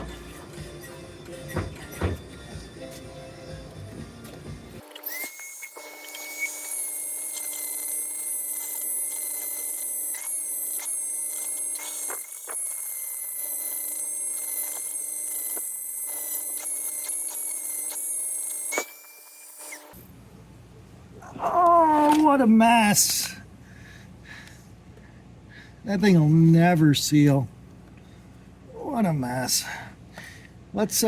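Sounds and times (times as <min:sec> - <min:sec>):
milling machine whining: 0:03.5 - 0:20.0
quiet hum: 0:19.9 - 0:31.0.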